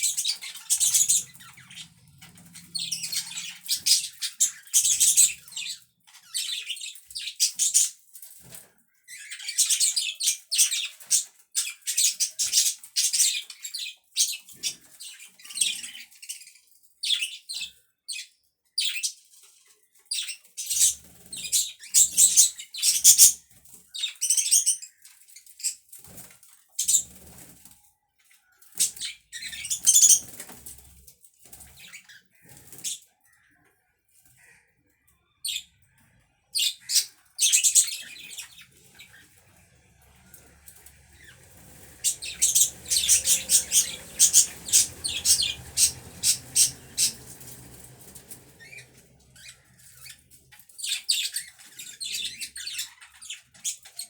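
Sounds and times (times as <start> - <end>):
budgerigars chattering: 0.0 - 6.8, 40.1 - 50.2.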